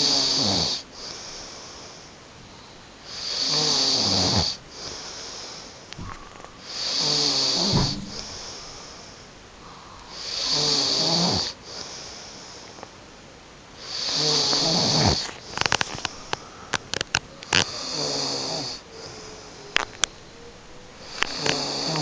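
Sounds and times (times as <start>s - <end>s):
woman snoring: 0.0s - 1.2s, 3.1s - 7.8s, 10.2s - 11.6s, 13.8s - 15.3s, 17.6s - 19.6s, 21.0s - 22.0s.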